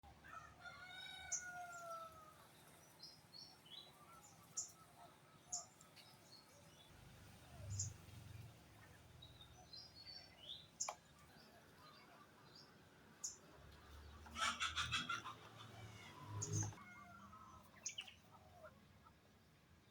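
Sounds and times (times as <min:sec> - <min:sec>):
rooster crowing: 0:00.2 - 0:02.4
small birds chirping: 0:01.0 - 0:19.9.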